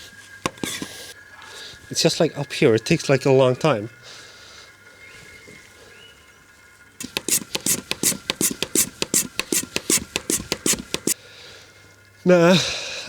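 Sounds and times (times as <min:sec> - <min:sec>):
hand pump air strokes: 0:00.4 - 0:01.1, 0:07.0 - 0:11.2.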